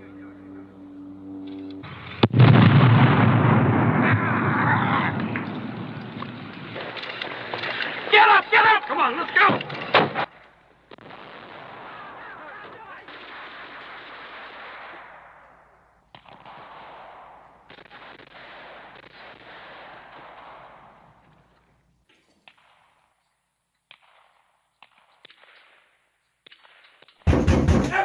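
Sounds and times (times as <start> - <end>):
sharp bangs: 1.2 - 15.4, 27.2 - 28.0.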